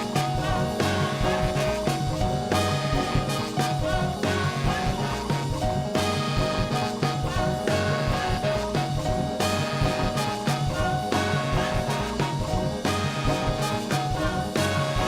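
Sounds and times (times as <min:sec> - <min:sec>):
afrobeat band instrumental: 0:00.0 - 0:15.0.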